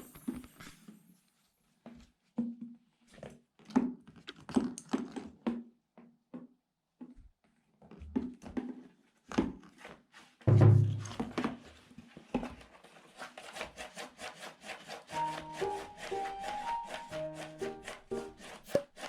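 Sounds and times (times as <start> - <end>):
cat scratching cardboard box: 11.0 - 19.0.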